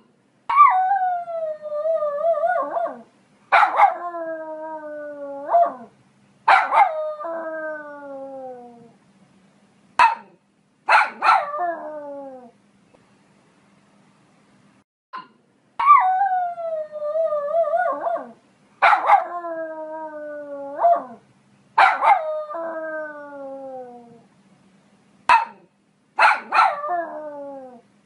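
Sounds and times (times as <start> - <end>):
dog barking: 3.5 - 4.0, 6.5 - 7.0, 10.0 - 11.5, 18.8 - 19.3, 21.8 - 22.2, 25.3 - 26.8
dog yipping: 3.6 - 4.0, 6.5 - 7.0, 10.0 - 10.3, 10.9 - 11.6, 18.8 - 19.3, 25.3 - 25.6, 26.2 - 26.8.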